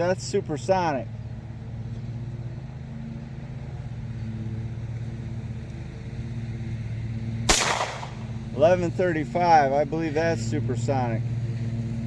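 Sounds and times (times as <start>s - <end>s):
low mechanical hum: 0.0s - 12.0s
rifle shot: 7.5s - 8.5s.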